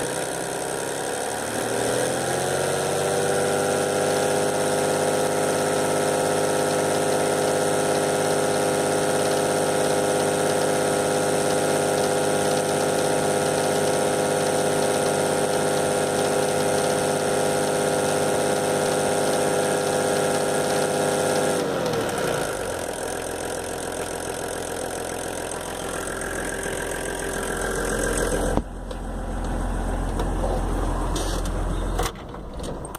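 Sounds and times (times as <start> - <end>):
engine winding down: 0.0 - 31.8
van engine idling: 22.4 - 32.0.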